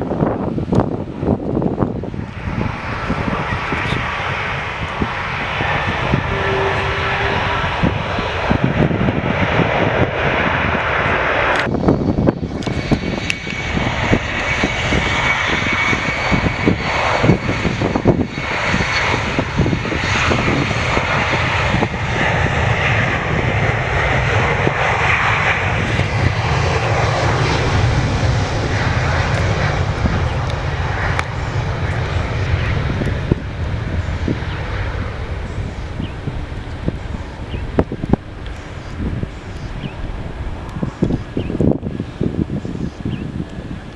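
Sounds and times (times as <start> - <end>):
jet engines roaring: 0.0 - 43.9
faint high whine: 5.6 - 8.4.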